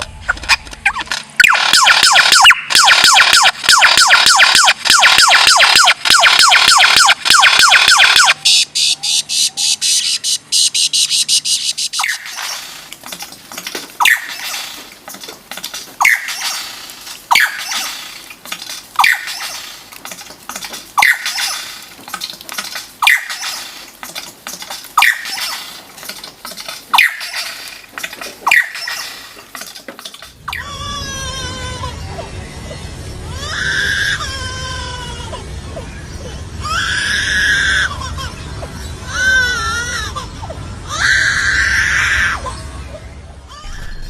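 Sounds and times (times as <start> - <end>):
bird squealing call sliding down: 10.0 - 12.9, 14.0 - 14.8, 16.0 - 18.2, 19.0 - 19.8, 23.0 - 23.8, 25.0 - 25.8, 26.9 - 27.8, 28.4 - 29.4, 43.6 - 44.0
bird clicking rattle: 11.5 - 30.4.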